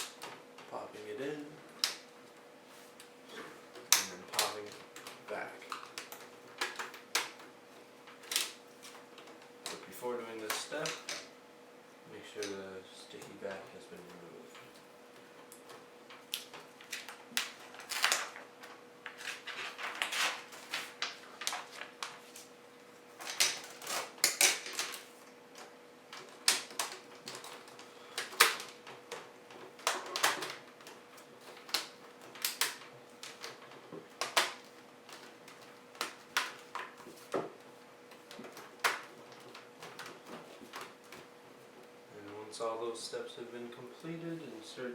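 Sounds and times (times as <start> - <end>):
faint steady hum: 0.0 - 44.9
plastic parts clicking and tapping: 26.1 - 41.2.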